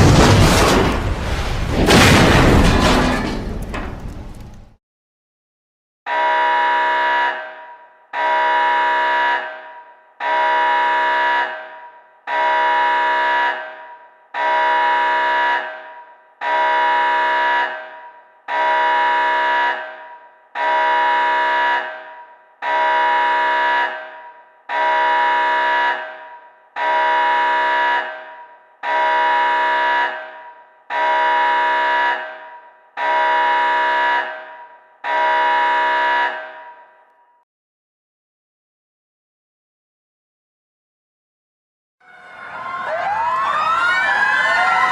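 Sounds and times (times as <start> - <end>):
electronic alarm horn blasts: 6.1 - 37.0.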